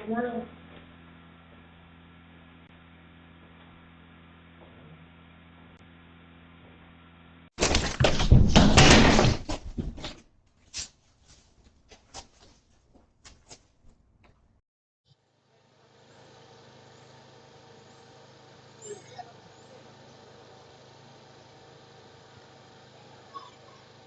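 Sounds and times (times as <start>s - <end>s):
low electrical hum: 0.0s - 10.5s
loud clattering and rattling: 7.6s - 10.2s.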